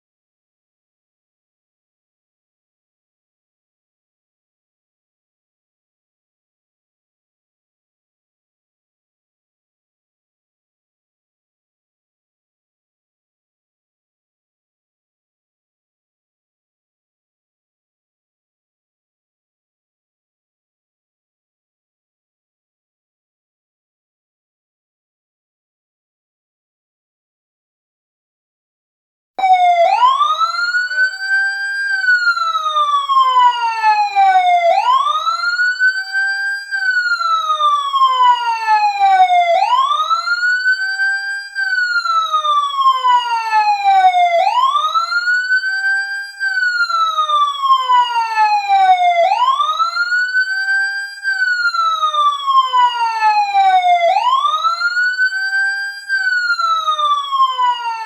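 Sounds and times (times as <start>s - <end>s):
fire truck siren wailing: 29.4s - 58.0s.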